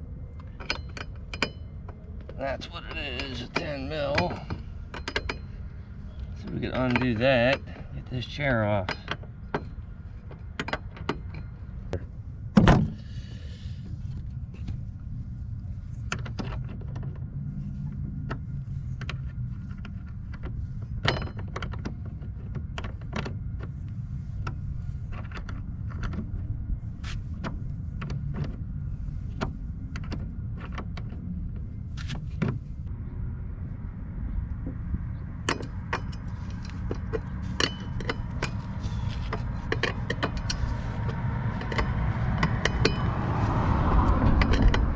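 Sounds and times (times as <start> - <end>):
steady low rumble: 0.0 - 44.9
wrench metal clinks: 35.5 - 43.2.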